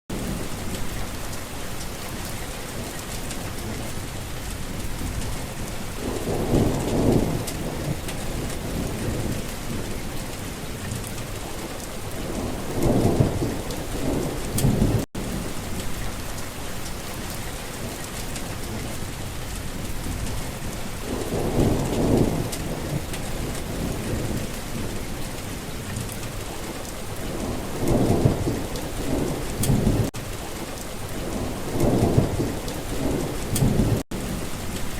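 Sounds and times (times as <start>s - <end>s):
heavy rain falling: 0.1s - 34.9s
low thunder rolls: 4.7s - 10.2s, 11.4s - 16.3s, 19.6s - 25.2s, 27.2s - 34.9s.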